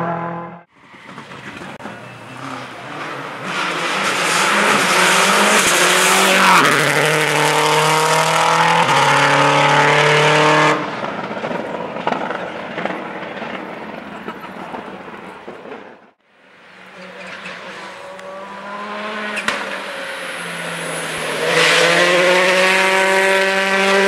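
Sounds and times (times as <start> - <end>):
rally car engine at high revs: 0.0 - 11.2, 17.3 - 24.0.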